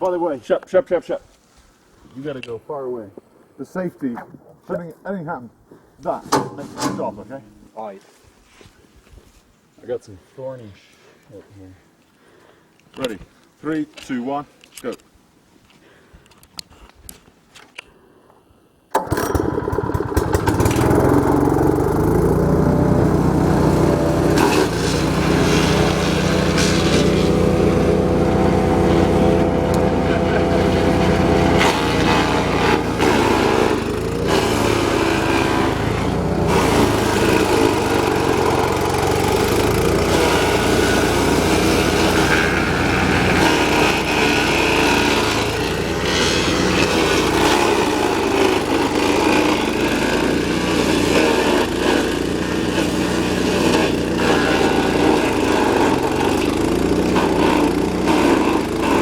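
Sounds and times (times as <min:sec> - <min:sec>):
petrol engine running steadily: 0:19.0 - 0:44.2
branches cracking in chipper: 0:23.9 - 0:50.1.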